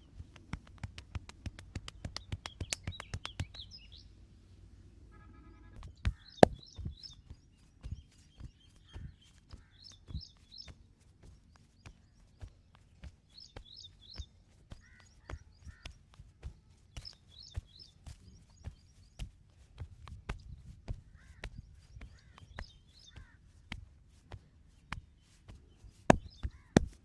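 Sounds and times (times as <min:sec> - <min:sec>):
hands slapping a body: 0:26.1 - 0:27.0.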